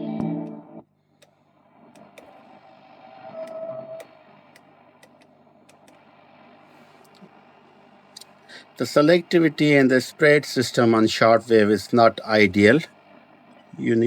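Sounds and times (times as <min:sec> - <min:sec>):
radio tuning clicks: 0:01.2 - 0:14.0
radio static and hum: 0:01.6 - 0:14.0
radio music: 0:01.8 - 0:14.0
radio whistle: 0:02.0 - 0:04.4.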